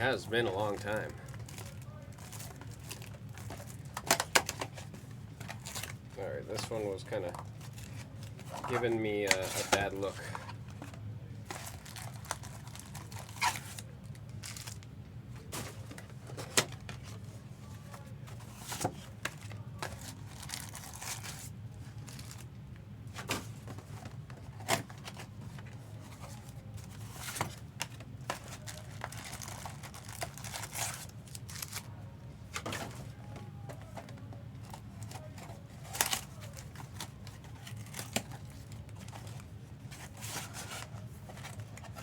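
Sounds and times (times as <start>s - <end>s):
low steady hum: 0.0s - 42.0s
foil packs tearing and crinkling: 0.4s - 4.7s, 11.4s - 14.9s, 18.6s - 22.5s, 24.6s - 31.9s, 34.6s - 42.0s.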